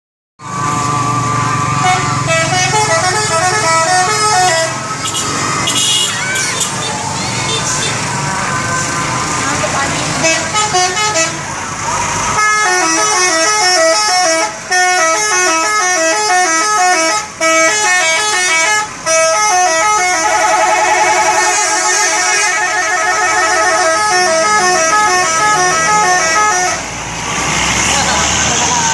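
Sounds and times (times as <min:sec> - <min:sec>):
bus engine hum: 0:00.4 - 0:28.9
musical multi-tone bus horn: 0:01.6 - 0:08.1, 0:10.1 - 0:26.9
low engine sound: 0:19.6 - 0:23.0.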